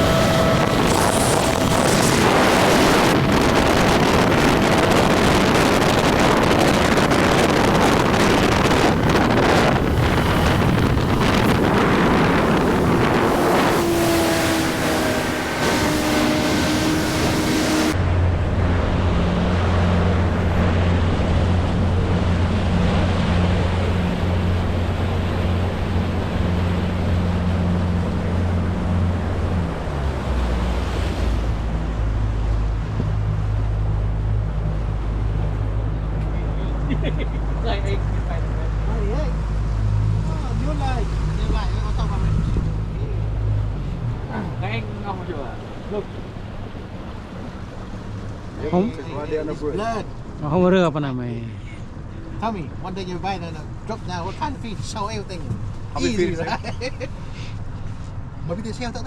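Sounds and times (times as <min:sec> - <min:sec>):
wind noise on microphone: 0:00.0 - 0:37.1, 0:38.0 - 0:44.6
rushing water: 0:00.0 - 0:58.4
motorboat engine: 0:00.0 - 0:59.0.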